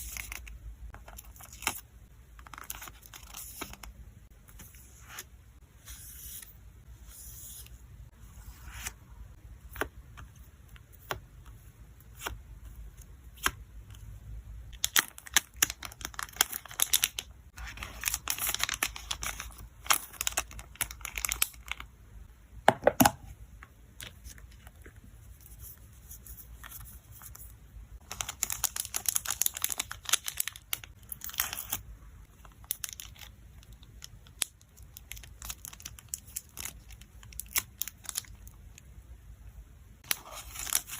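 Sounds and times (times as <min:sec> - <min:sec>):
plastic packaging crinkling and tearing: 0:14.7 - 0:21.9, 0:28.0 - 0:31.8, 0:32.4 - 0:38.6, 0:40.0 - 0:40.9.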